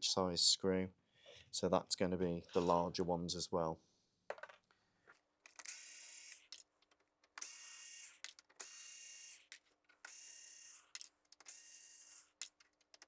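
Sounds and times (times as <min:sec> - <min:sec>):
electric screwdriver running: 0:05.6 - 0:06.6, 0:07.4 - 0:12.5.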